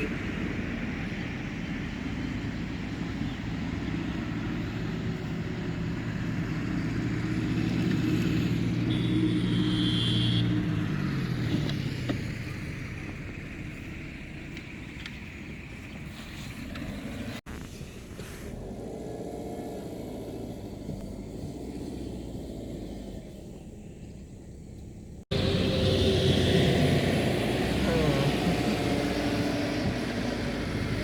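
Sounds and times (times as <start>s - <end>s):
car engine running: 16.7s - 31.0s.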